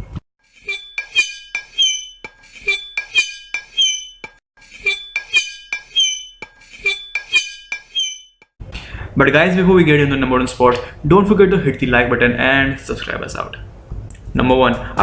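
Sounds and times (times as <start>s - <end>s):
squeaking scrapes on glass: 0.5s - 8.6s.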